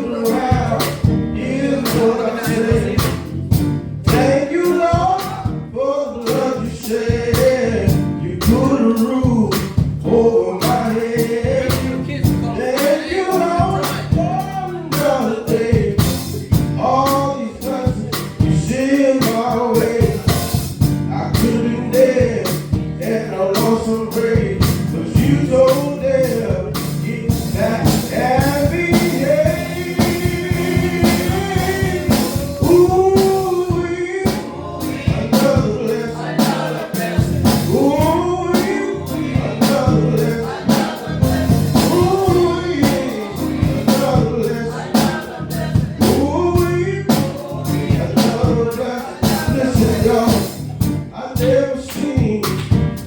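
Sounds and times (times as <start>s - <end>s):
person singing gospel: 0.0s - 53.0s
live band with guitar: 26.5s - 38.0s.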